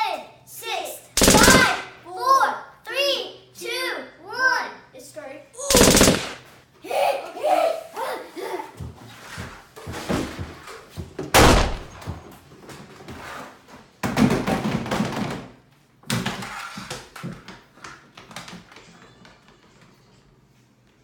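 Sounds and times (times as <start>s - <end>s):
heavy thuds and bangs: 1.2s - 1.9s, 11.4s - 12.1s.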